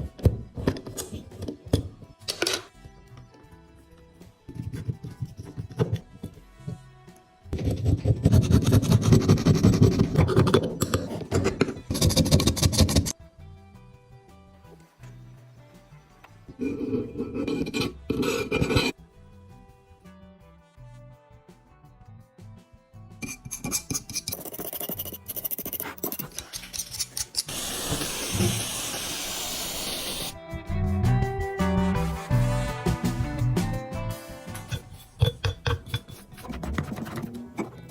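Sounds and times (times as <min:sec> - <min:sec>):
background music: 0:00.0 - 0:37.9
tool scraping metal: 0:16.5 - 0:19.0, 0:23.2 - 0:27.8, 0:34.6 - 0:37.9
high airy hiss: 0:27.5 - 0:30.3.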